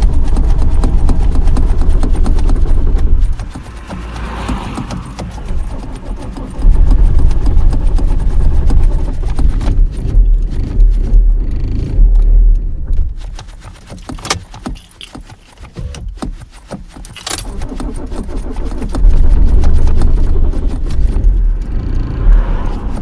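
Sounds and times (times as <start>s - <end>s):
car engine cranking: 0.0s - 23.0s
keys jangling: 14.2s - 15.8s, 16.9s - 17.5s.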